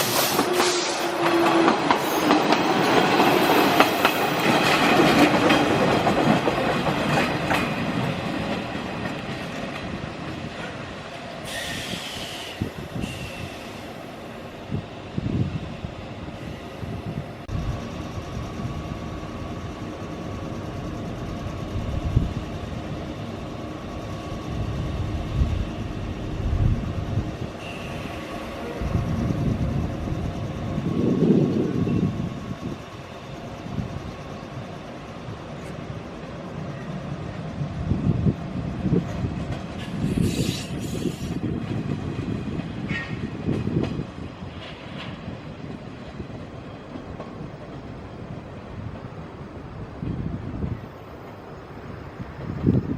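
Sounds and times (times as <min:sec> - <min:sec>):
electric train humming: 0:00.0 - 0:52.9
burst of hiss: 0:11.4 - 0:14.0, 0:39.9 - 0:41.4
brief squeal: 0:11.5 - 0:13.9, 0:27.6 - 0:29.0, 0:39.9 - 0:41.4.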